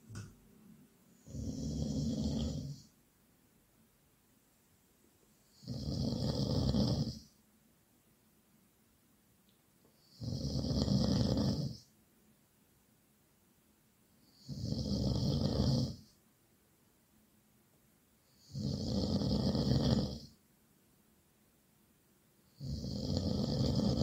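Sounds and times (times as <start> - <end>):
loud snoring: 1.2 - 2.9, 5.5 - 7.3, 10.0 - 11.9, 14.3 - 16.1, 18.4 - 20.4, 22.6 - 24.0.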